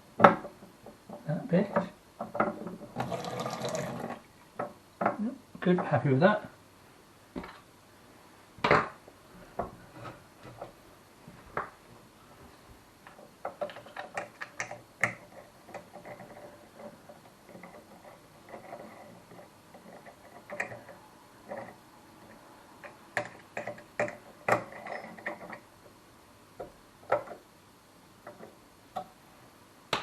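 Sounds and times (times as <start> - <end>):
metal tap parts clicking and knocking: 13.1 - 16.4.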